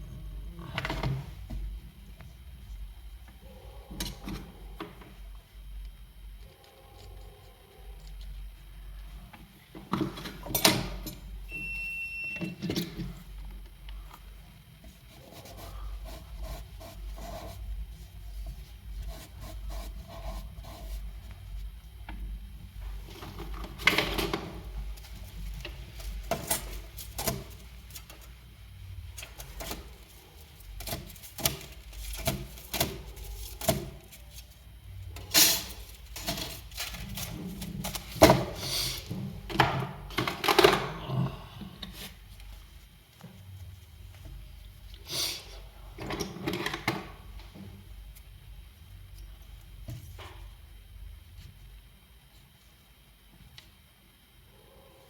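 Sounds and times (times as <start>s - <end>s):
steady low hum: 0.0s - 55.0s
short beep: 11.5s - 12.5s.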